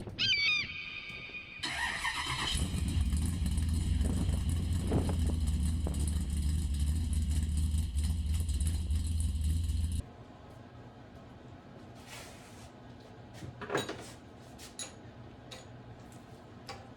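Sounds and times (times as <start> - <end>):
engine running with deep rumble: 1.6 - 10.6.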